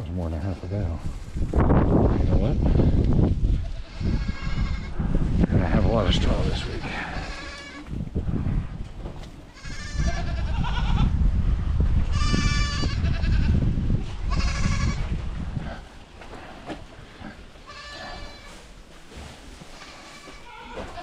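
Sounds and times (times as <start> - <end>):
young goats bleating: 2.1 - 5.0, 6.6 - 8.0, 9.5 - 11.2, 12.1 - 13.6, 14.2 - 15.1, 17.6 - 18.6, 19.8 - 21.0.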